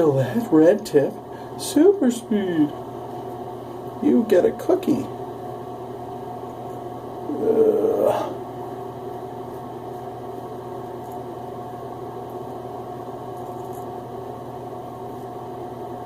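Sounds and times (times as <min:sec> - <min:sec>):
mechanical hum with hiss: 0:00.0 - 0:16.0.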